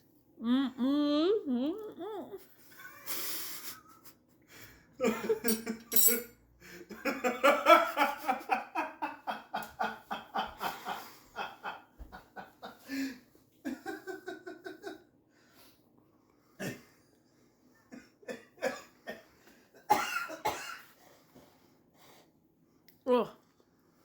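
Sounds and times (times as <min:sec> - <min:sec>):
woman laughing: 0:00.4 - 0:04.1.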